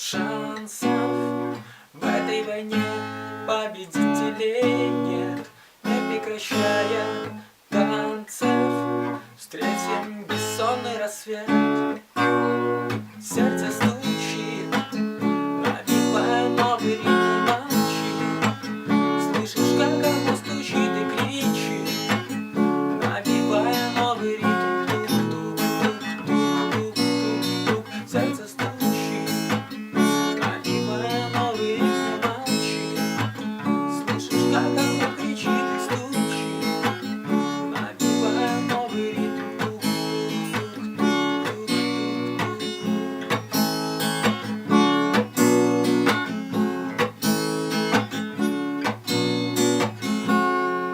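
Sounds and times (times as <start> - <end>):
acoustic guitar strummed and plucked: 0.0 - 50.9.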